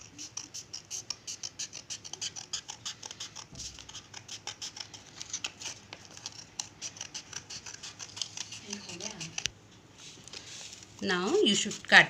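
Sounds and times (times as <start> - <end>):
scissors snipping paper: 0.0 - 9.5.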